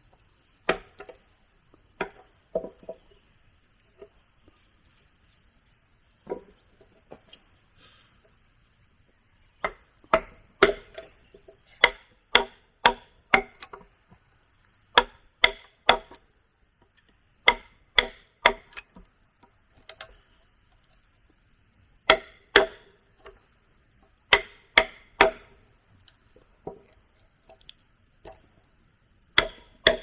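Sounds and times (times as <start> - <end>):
tool chopping into wood: 0.7 - 1.1, 9.6 - 11.0, 11.8 - 13.6, 15.0 - 16.2, 17.5 - 18.7, 22.1 - 22.9, 24.3 - 25.5, 29.4 - 30.0.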